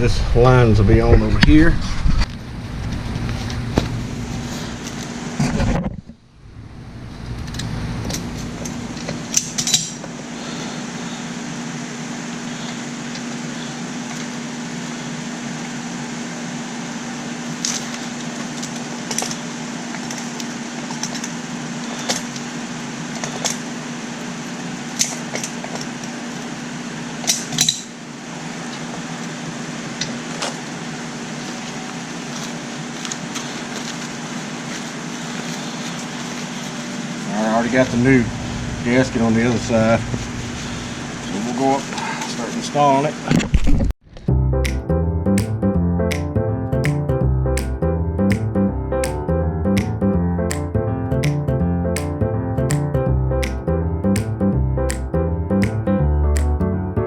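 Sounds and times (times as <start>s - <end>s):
steady low hum: 0.0s - 43.5s.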